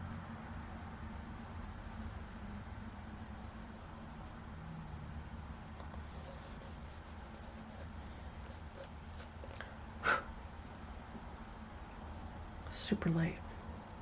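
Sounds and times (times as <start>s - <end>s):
low steady hum: 0.0s - 14.0s
pencil scratching on paper: 6.0s - 9.6s.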